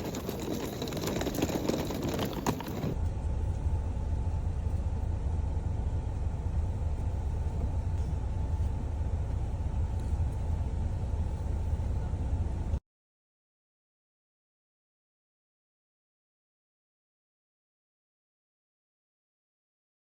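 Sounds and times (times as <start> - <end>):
low vehicle rumble: 0.0 - 12.8.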